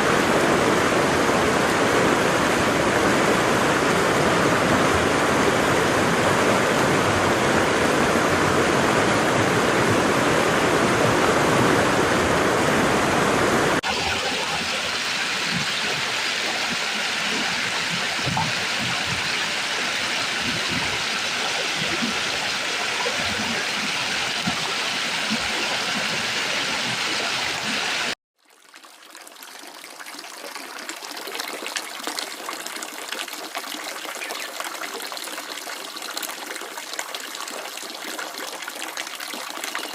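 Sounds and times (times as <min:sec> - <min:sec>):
waterfall and stream rushing: 0:00.0 - 0:28.2
water splashing trickle: 0:13.8 - 0:39.9.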